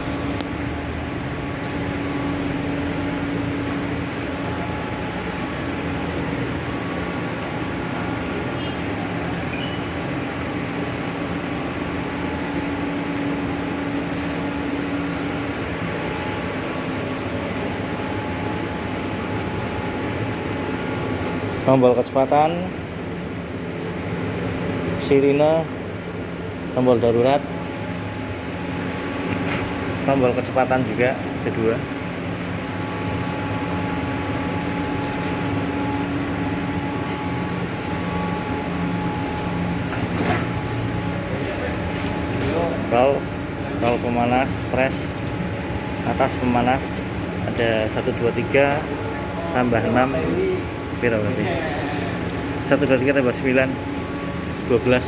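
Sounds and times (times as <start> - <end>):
laminating machine humming: 0.0 - 55.0.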